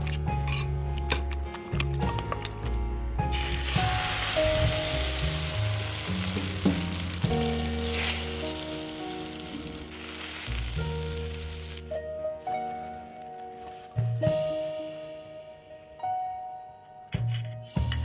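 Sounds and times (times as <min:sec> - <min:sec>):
background music with low notes: 0:00.0 - 0:18.0
food sizzling in a pan: 0:03.3 - 0:11.9.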